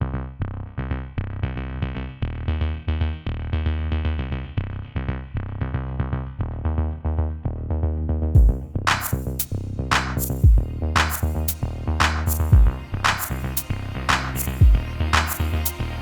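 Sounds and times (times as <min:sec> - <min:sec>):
electronic music with beat: 0:08.4 - 0:16.0.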